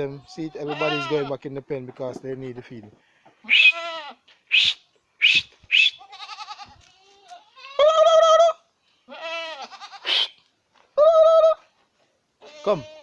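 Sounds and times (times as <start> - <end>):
goats bleating: 0.0 - 1.4, 3.3 - 4.2, 5.8 - 10.4, 12.4 - 13.0.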